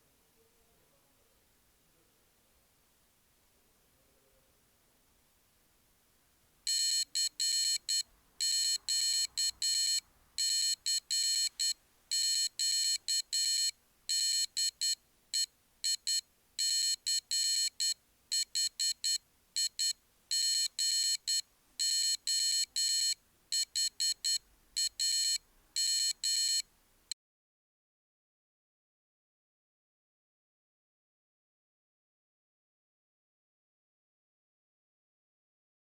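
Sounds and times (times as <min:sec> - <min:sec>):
morse code beeps: 0:06.7 - 0:26.6.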